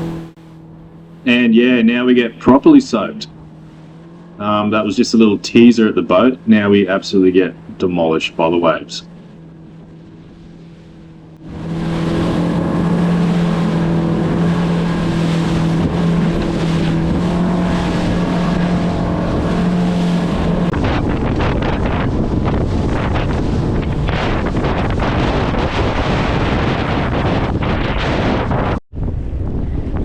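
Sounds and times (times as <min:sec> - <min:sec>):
outboard motor running: 0:00.0 - 0:28.8
water slapping: 0:00.0 - 0:28.8
wind on microphone: 0:08.9 - 0:30.0.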